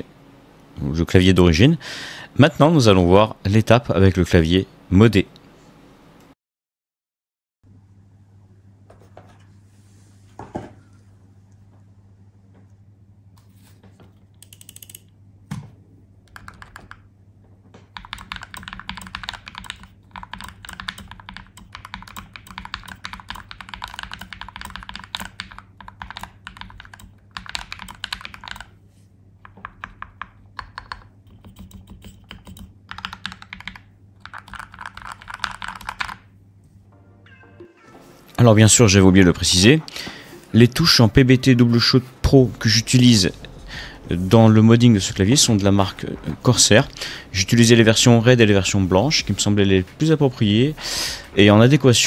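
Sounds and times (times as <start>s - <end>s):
steady low hum: 7.6s - 37.3s, 38.0s - 52.0s
mechanical keyboard typing: 14.4s - 15.1s, 16.3s - 17.1s, 17.9s - 28.7s, 29.4s - 36.2s.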